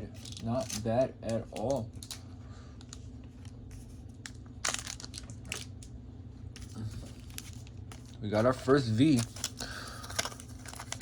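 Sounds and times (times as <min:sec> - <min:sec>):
cards and foil wrapper crinkling: 0:00.0 - 0:05.9, 0:06.6 - 0:11.0.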